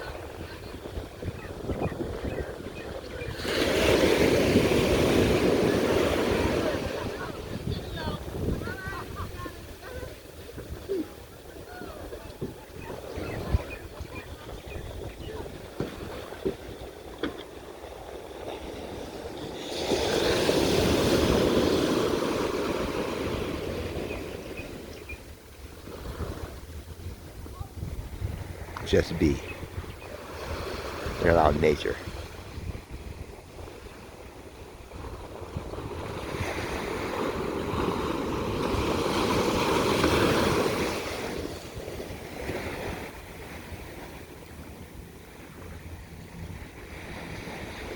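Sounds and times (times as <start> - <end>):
wind rumble on microphone: 0.0 - 31.3, 31.9 - 47.9
ocean wave rushing in: 3.2 - 11.8, 17.7 - 47.9.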